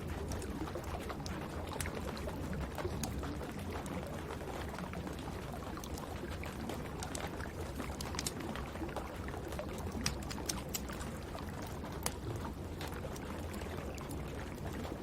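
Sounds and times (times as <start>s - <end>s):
wood fire crackling: 7.9s - 8.5s, 9.4s - 12.2s.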